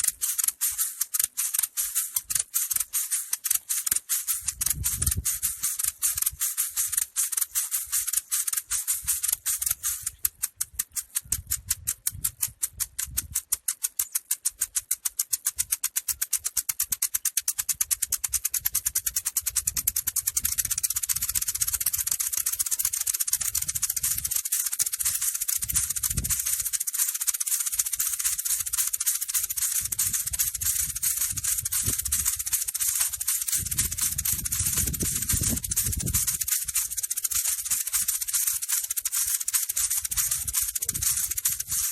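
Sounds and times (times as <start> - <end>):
maracas rattling: 0.0 - 41.9.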